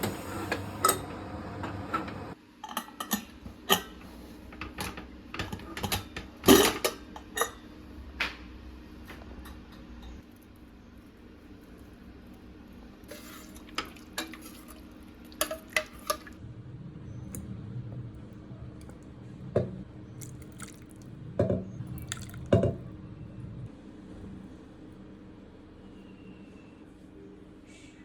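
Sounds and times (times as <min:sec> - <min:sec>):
low steady rumble: 0:16.0 - 0:25.0.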